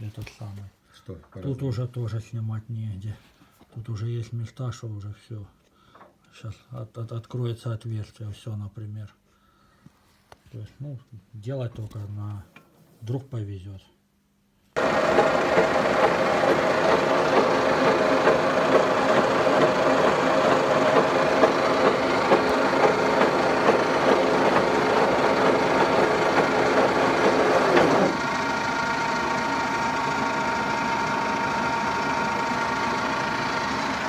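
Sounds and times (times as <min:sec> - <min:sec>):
machine cutting metal: 0:14.8 - 0:34.0.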